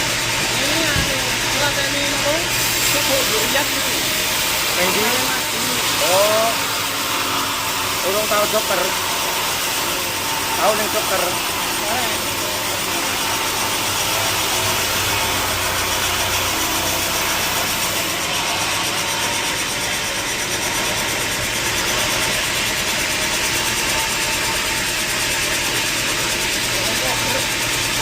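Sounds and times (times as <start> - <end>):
sawmill machinery running: 0.0 - 28.0.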